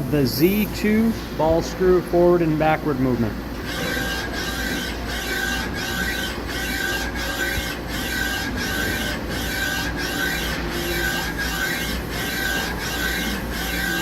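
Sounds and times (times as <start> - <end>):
lathe ball screw rasping whir: 3.6 - 14.0.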